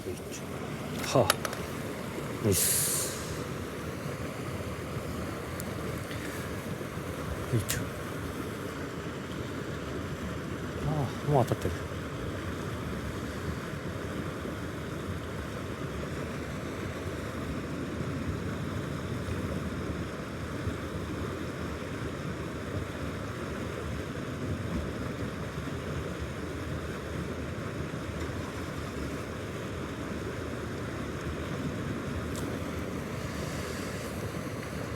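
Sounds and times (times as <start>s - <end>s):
water rushing into pond: 0.0s - 13.3s, 28.6s - 34.9s.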